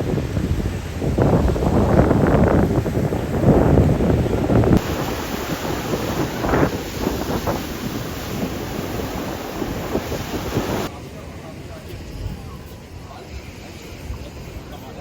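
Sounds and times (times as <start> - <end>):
wind buffeting microphone: 0.0 - 10.9
sea waves on shore: 4.3 - 10.9.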